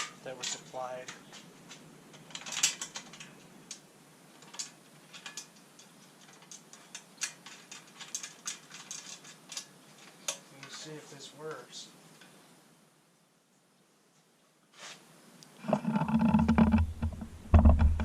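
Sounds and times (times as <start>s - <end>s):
small rattles: 0.0s - 11.0s, 15.6s - 18.0s.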